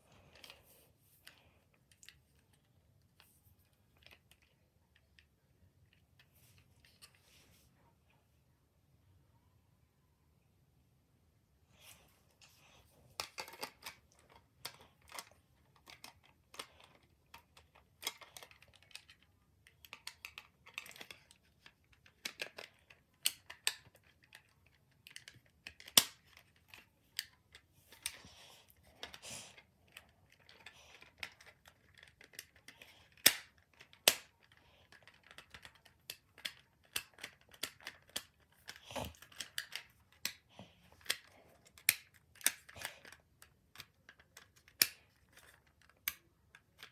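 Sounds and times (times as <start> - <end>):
plastic toy parts clicking: 13.2 - 46.9
plastic snaps: 32.2 - 38.3.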